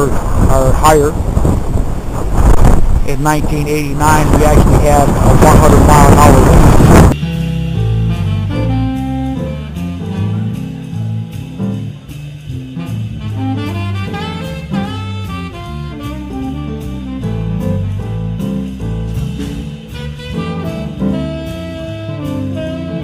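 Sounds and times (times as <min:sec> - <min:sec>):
bass: 0:00.0 - 0:23.0
drum kit: 0:02.4 - 0:23.0
saxophone melody: 0:07.1 - 0:11.4, 0:12.8 - 0:18.8, 0:19.7 - 0:23.0.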